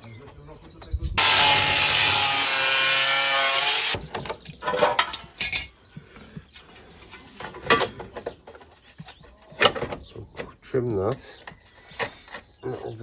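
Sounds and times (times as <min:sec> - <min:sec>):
power tool running: 0:01.2 - 0:04.0.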